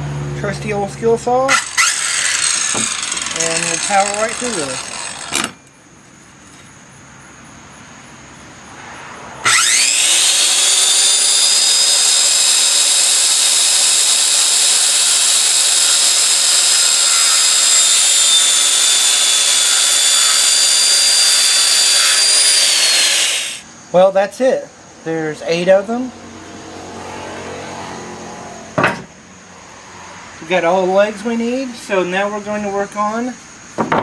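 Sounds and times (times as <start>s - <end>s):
circular saw whining: 0.4s - 5.7s, 9.4s - 23.7s.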